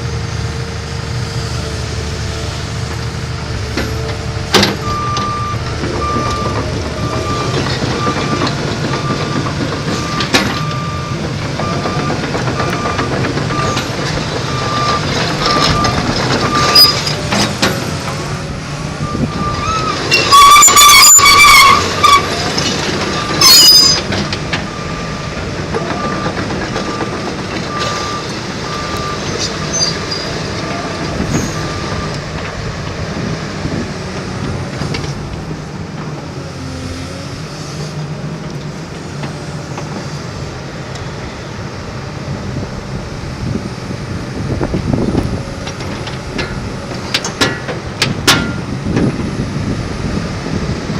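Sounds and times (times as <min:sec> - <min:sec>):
excavator running: 0:00.0 - 0:50.9
travel alarm beeping: 0:04.8 - 0:17.0, 0:19.0 - 0:22.2, 0:25.9 - 0:29.2
high-pitched metallic squeals: 0:14.5 - 0:17.3, 0:19.1 - 0:22.6, 0:23.2 - 0:24.1, 0:28.9 - 0:30.5.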